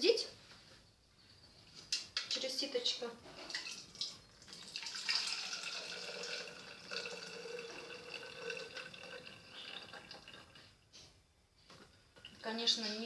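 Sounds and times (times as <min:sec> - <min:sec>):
liquid trickling through a sieve: 0:03.4 - 0:10.7.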